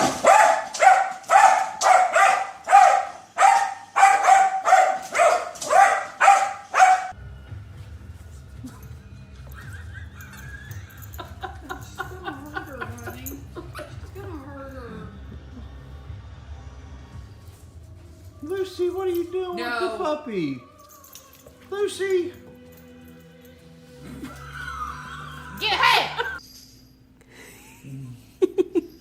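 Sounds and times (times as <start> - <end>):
dog barking: 0.0 - 7.2.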